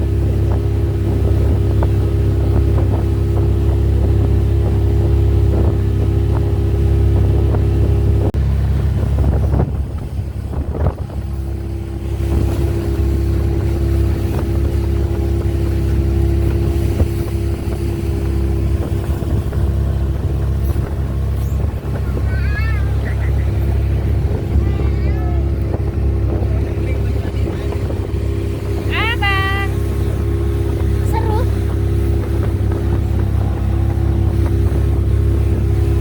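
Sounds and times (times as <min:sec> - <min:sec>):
boat engine droning: 0:00.0 - 0:36.0.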